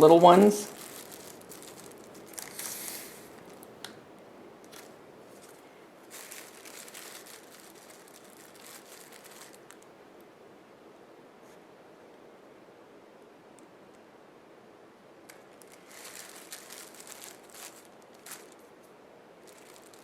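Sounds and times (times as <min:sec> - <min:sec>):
rustling and crinkling materials: 0:00.0 - 0:10.0, 0:15.3 - 0:20.0.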